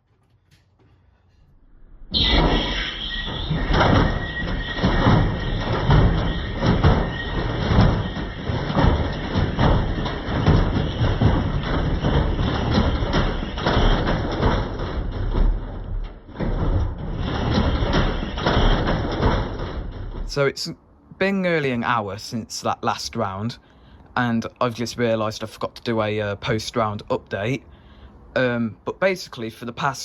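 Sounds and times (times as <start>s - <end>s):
washing machine banging and thumping: 2.2s - 20.4s.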